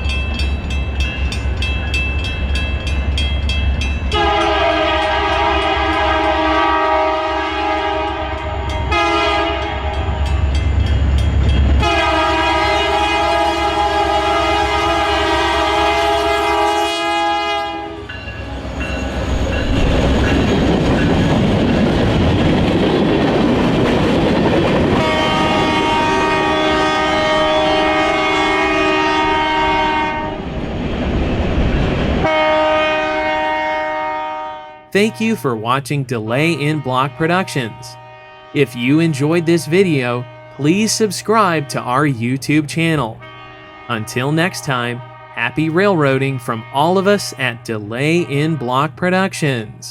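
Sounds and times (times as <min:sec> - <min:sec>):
train rumbling on rails: 0:00.0 - 0:34.1
locomotive air horn blasts: 0:04.1 - 0:10.3, 0:11.8 - 0:18.1, 0:24.9 - 0:30.4, 0:32.2 - 0:35.4, 0:36.4 - 0:42.0, 0:43.1 - 0:48.8.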